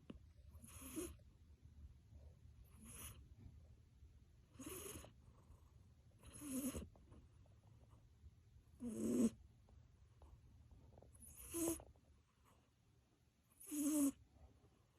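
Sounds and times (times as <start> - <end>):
cat snoring: 0.5 - 1.2, 2.6 - 3.2, 4.5 - 6.9, 8.8 - 9.4, 11.1 - 11.9, 13.5 - 14.2.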